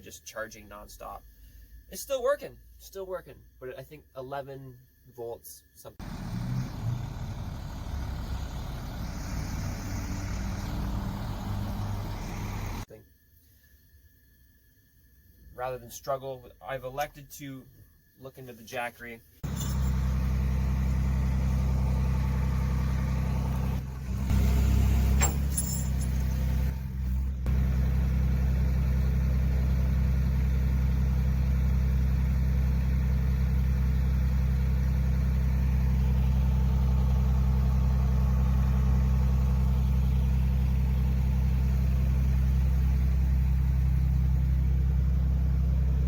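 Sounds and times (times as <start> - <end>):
low engine drone: 19.4 - 46.0.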